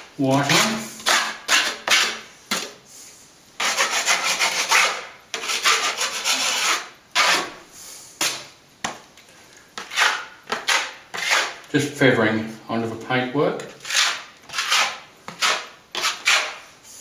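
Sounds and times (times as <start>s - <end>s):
trowel scraping plaster: 0.2s - 2.8s, 3.6s - 7.6s, 9.8s - 11.7s, 13.6s - 16.6s.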